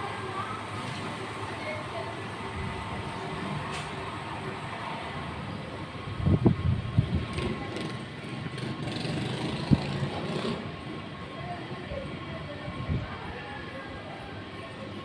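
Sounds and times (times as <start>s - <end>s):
low wind buffets: 5.8s - 7.7s
wind rushing against microphone: 6.0s - 7.6s.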